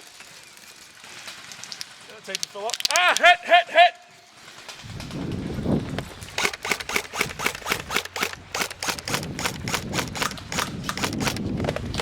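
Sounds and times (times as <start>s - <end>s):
airsoft guns firing: 6.2s - 11.9s.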